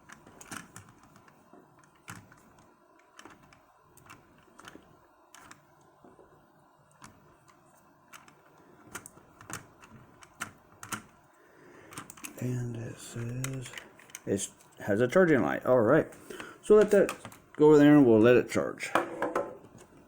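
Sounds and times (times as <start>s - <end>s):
plastic toy parts clicking: 0.1s - 5.6s, 6.9s - 11.2s, 11.9s - 12.4s, 13.2s - 14.8s.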